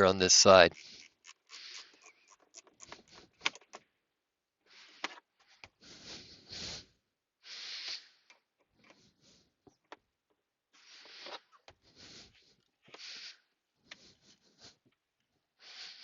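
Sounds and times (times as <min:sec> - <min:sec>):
wrench scraping and clicking: 0:00.7 - 0:03.8.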